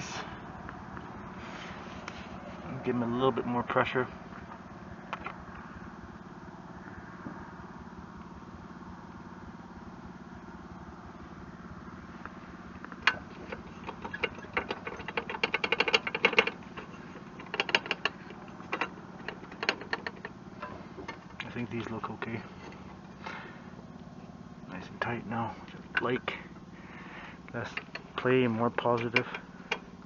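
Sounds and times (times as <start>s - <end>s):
steady low hum: 0.0s - 30.0s
rapid metallic clicking and rattling: 12.2s - 24.1s, 24.7s - 30.0s.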